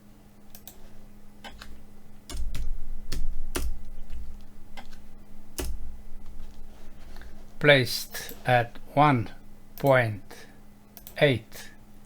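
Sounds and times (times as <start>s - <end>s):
faint steady hum: 0.0s - 12.0s
keyboard and mouse clicks: 0.5s - 5.8s.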